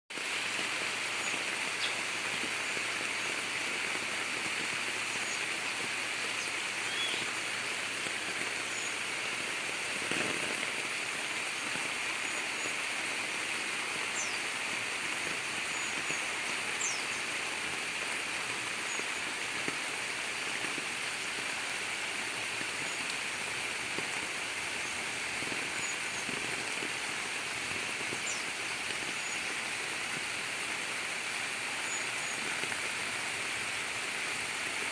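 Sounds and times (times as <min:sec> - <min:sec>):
heavy rain falling: 0:00.1 - 0:34.9
rainwater running: 0:00.1 - 0:34.9
faint bird chirps: 0:06.4 - 0:07.3.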